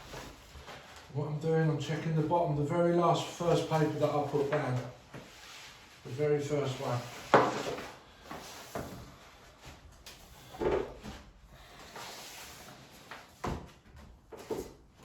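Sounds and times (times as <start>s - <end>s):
wallpaper knocks and rustles: 13.0s - 15.0s.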